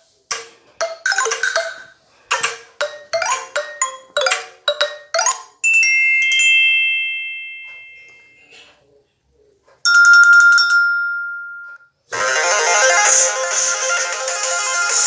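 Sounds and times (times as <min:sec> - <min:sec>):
phone ringtone notes: 0:02.8 - 0:08.5, 0:09.9 - 0:11.9
bright sustained chime: 0:05.8 - 0:08.5.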